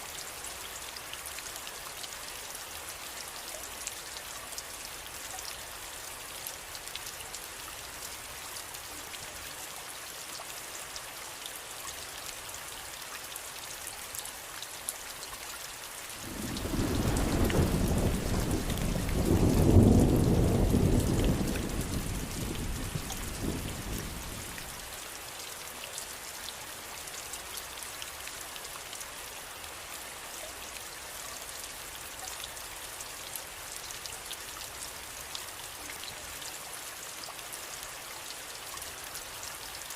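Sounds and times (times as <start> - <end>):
steady rain falling: 0.0 - 39.9
thunder rolling: 16.2 - 24.2.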